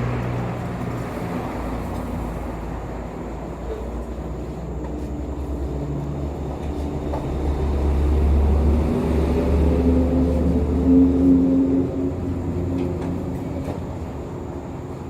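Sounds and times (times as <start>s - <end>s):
motor traffic rumble: 0.0s - 15.0s.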